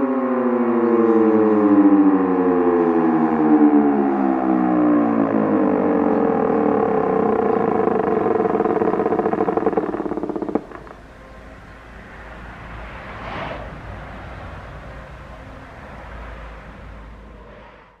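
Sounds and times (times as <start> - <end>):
electronic siren pulsing: 0.0 - 13.0
low outdoor rumble: 3.4 - 18.0.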